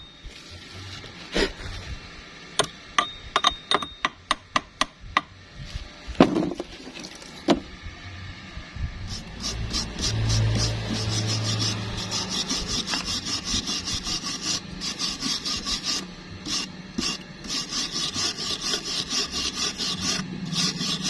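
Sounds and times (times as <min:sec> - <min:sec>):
low hum: 0:00.0 - 0:21.0
hammer tapping metal: 0:02.6 - 0:05.3
fast scraping strokes: 0:09.0 - 0:21.0.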